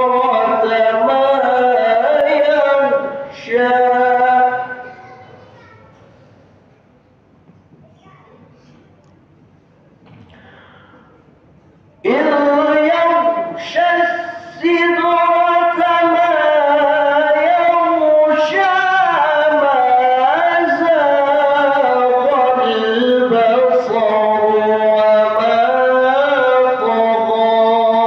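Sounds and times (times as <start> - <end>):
man chanting melodically: 0.0 - 5.3, 12.0 - 28.0.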